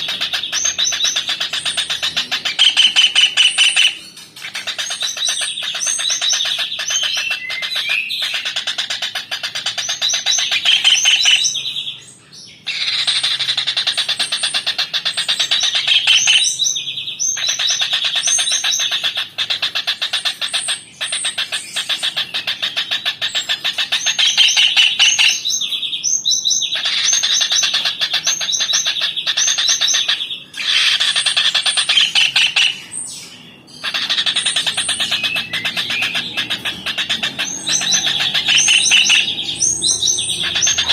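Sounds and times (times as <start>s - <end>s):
kingfisher chattering trill: 33.5s - 40.9s.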